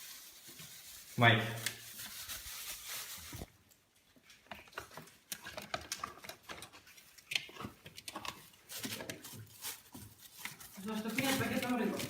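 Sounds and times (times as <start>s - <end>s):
small objects clicking and rustling: 4.2s - 12.0s.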